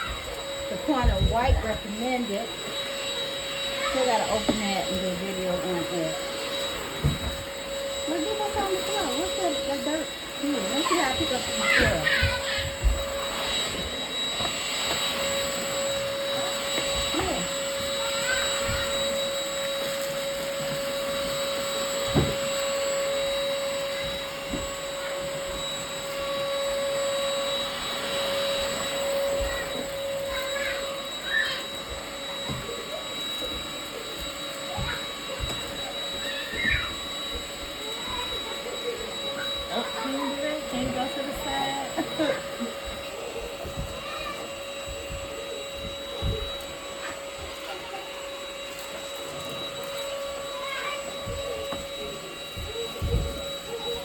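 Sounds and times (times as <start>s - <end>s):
stick vacuum whining: 0.0s - 54.0s.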